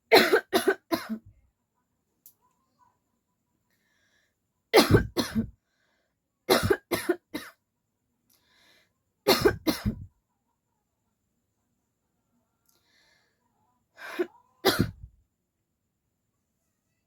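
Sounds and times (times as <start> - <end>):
woman coughing: 0.1 - 1.3, 4.8 - 5.5, 6.5 - 7.6, 9.3 - 10.1, 14.0 - 15.1.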